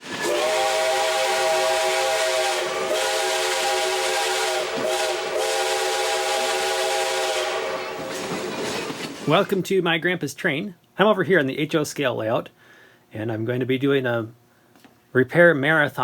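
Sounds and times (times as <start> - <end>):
steam locomotive chime whistle: 0.0 - 8.3
steam hissing: 0.0 - 9.4.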